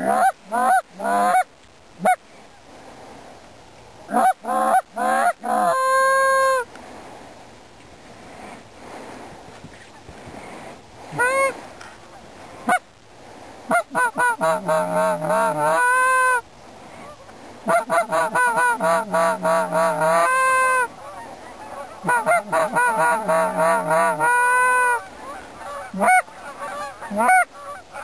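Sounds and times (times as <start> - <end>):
goose honking and clucking: 0.0 - 2.2, 4.1 - 6.6, 11.1 - 11.6, 13.7 - 16.4, 17.0 - 28.0.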